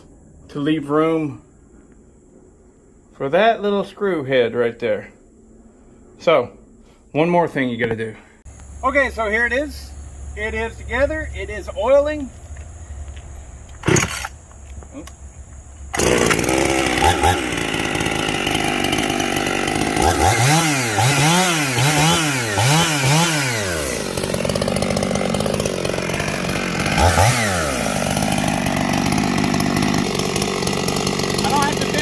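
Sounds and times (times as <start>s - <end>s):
chainsaw revving and idling: 8.6s - 32.0s.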